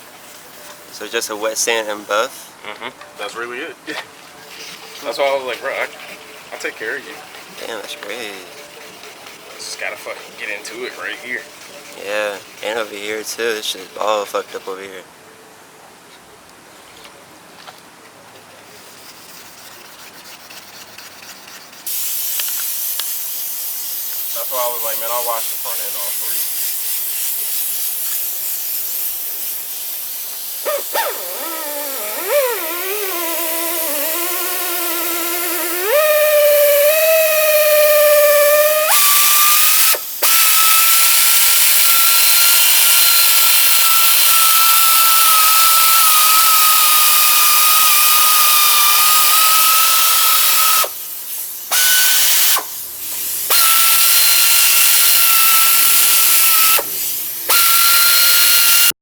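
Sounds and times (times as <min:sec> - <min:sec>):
steady hiss: 0:00.0 - 0:15.1, 0:18.4 - 0:59.0
power tool motor whining: 0:30.7 - 0:50.9, 0:51.7 - 0:52.7, 0:53.5 - 0:56.9, 0:57.5 - 0:59.0.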